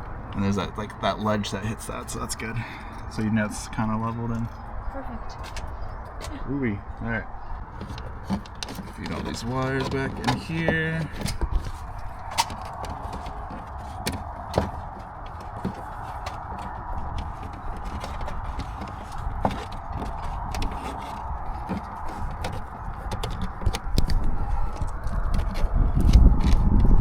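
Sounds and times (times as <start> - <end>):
clicks and taps on plastic trim: 7.7 - 25.6.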